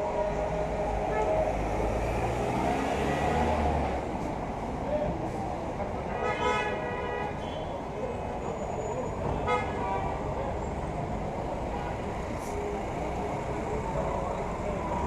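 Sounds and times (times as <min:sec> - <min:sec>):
traffic rumble: 0:00.0 - 0:15.0
car horn: 0:06.2 - 0:07.6, 0:09.4 - 0:10.1.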